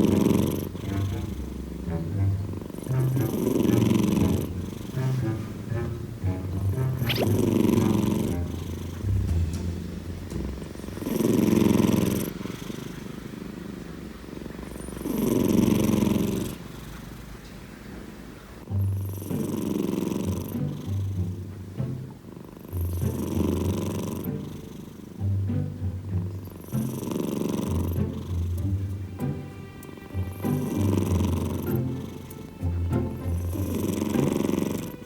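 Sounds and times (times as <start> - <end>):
cat snoring with rattle: 0.0 - 5.7, 6.5 - 25.2, 26.1 - 29.0, 30.3 - 35.0.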